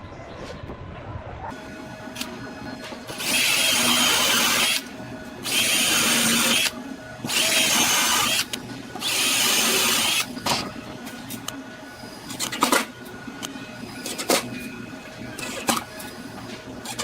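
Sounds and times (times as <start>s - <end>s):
electric drill whining: 3.1s - 10.3s.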